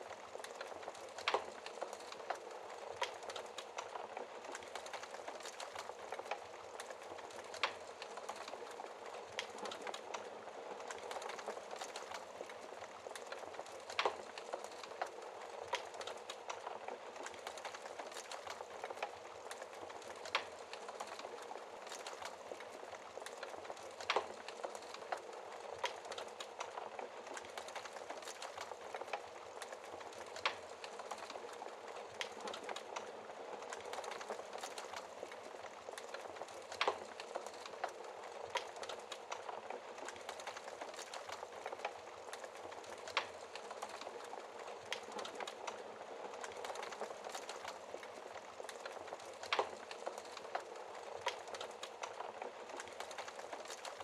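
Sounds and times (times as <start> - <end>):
wood fire crackling: 0.0 - 54.0
fire popping: 0.1 - 54.0.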